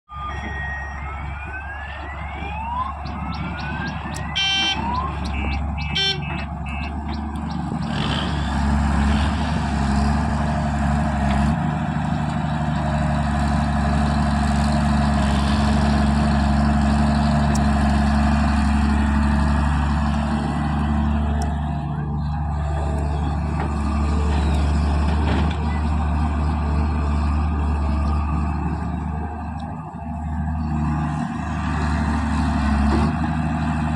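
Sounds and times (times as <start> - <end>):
heavy machinery diesel engine running: 0.2 - 33.9.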